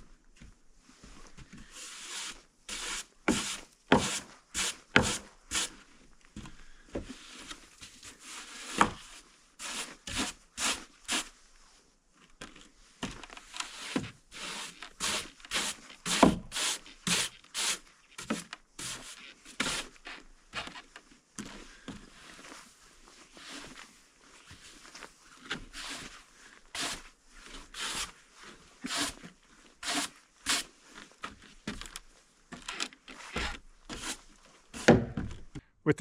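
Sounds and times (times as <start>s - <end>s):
broom sweeping snow: 1.7s - 5.8s, 7.2s - 11.4s, 13.7s - 20.0s, 22.2s - 30.8s.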